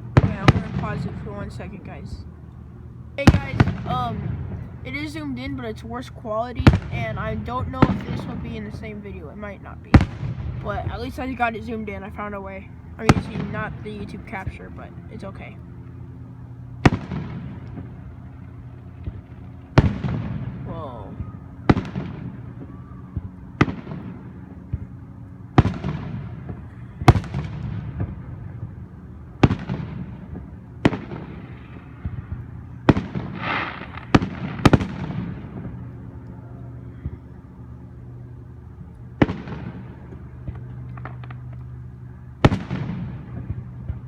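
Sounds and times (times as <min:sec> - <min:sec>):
fireworks booming: 0:00.0 - 0:16.0, 0:16.7 - 0:36.2, 0:38.8 - 0:41.7, 0:42.4 - 0:44.0
boom echo: 0:03.2 - 0:04.9, 0:09.8 - 0:11.5.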